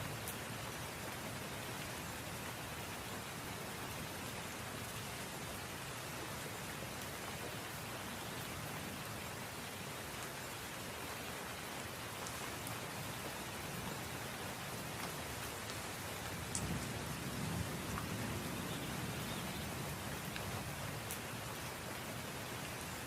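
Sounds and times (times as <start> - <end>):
steady rain: 0.0 - 23.0
raindrops ticking: 12.0 - 22.0.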